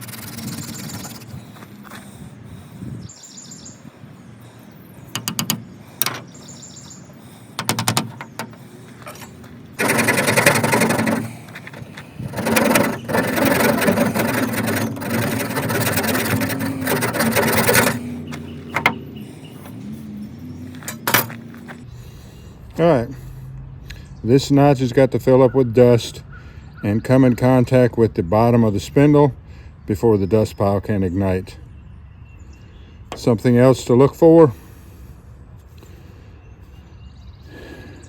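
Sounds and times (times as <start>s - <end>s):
hand drill spindle squeaking: 0.0s - 1.3s, 5.1s - 6.4s, 7.6s - 19.0s, 20.8s - 21.4s.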